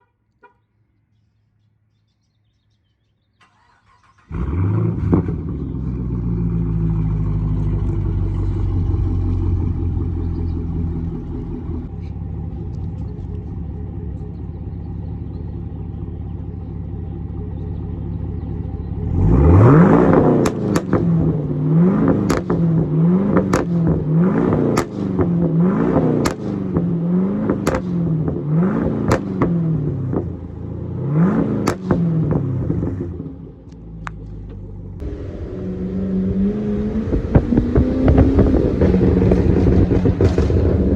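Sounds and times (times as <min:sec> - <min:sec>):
engine revving: 0:03.4 - 0:40.9
car engine idling: 0:03.5 - 0:40.9
exhaust pops and crackles: 0:07.3 - 0:19.1, 0:19.9 - 0:30.6, 0:31.3 - 0:35.1, 0:37.0 - 0:40.9.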